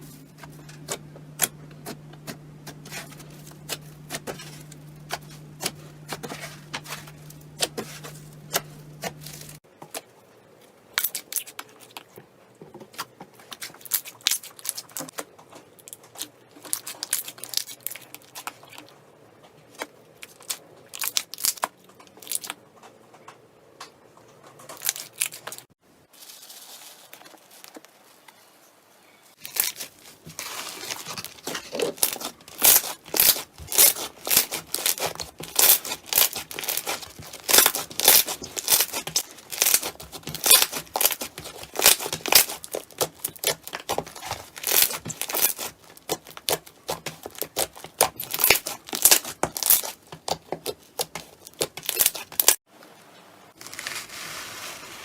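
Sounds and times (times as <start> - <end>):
slime crackling and popping: 29.4 - 52.6.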